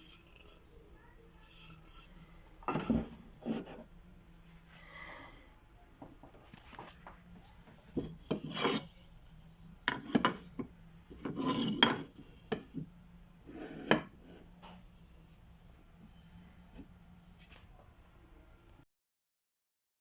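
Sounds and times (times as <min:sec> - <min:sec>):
wood scraping and rubbing: 0:01.4 - 0:03.9, 0:07.7 - 0:09.2, 0:09.9 - 0:12.7.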